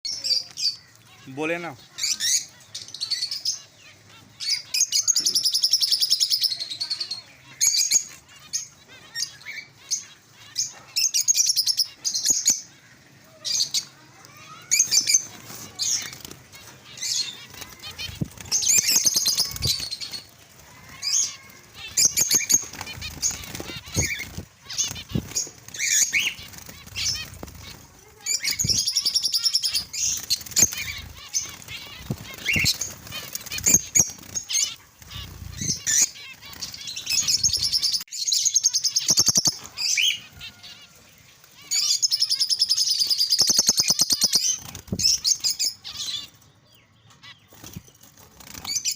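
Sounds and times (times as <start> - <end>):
finches chirping: 0.1 - 48.0
wing flutters: 14.3 - 38.1, 43.4 - 46.2, 47.5 - 48.9.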